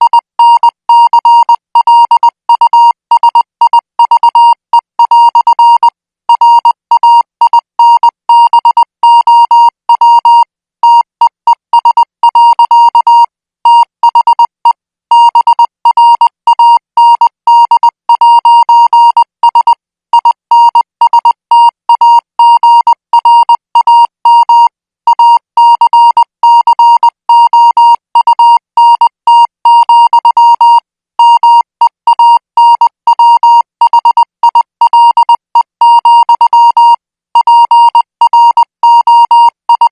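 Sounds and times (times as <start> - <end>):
morse code beeps: 0.0 - 39.9.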